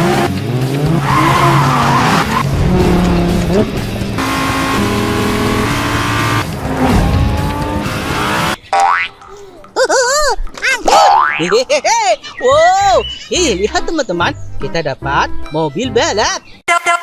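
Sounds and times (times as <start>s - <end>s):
background music: 0.0s - 8.6s
sports car engine revving: 0.0s - 8.6s.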